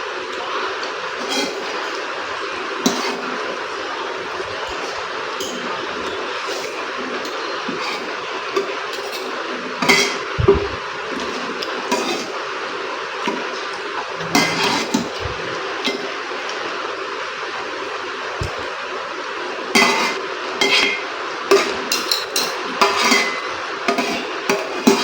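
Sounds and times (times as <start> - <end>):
cutlery clinking against bowl: 2.8 - 3.3, 5.4 - 12.4, 19.8 - 25.0.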